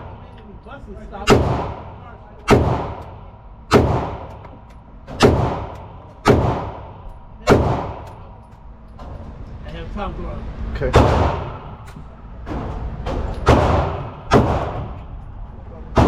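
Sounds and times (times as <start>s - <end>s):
gunshots: 1.2s - 4.5s, 5.1s - 8.2s, 10.9s - 11.7s, 13.4s - 15.0s.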